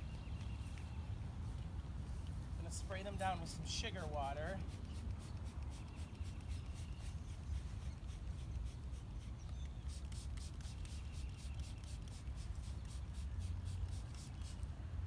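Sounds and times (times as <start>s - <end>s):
spray bottle squirting: 9.8s - 14.6s.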